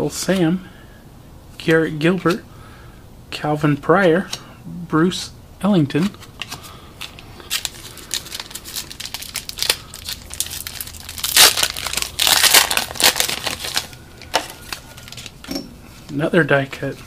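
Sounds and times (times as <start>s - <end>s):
foil wrapper crinkling and tearing: 6.4s - 15.4s.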